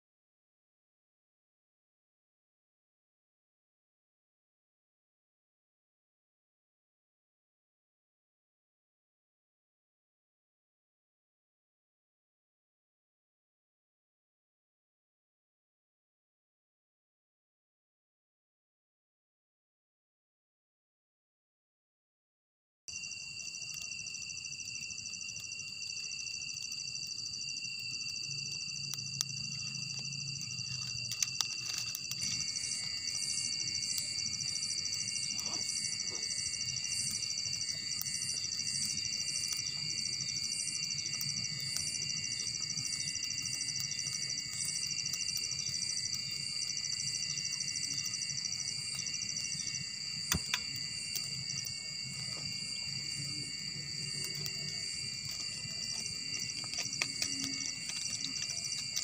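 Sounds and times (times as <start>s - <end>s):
crickets and insects trilling: 22.9s - 59.0s
fast-pulsing insect trill: 22.9s - 59.0s.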